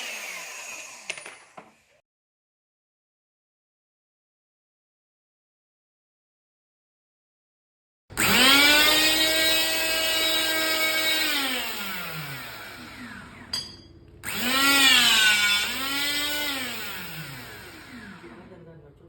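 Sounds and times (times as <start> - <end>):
electric motor whining: 0.0 - 1.2, 8.1 - 13.5, 14.2 - 18.5.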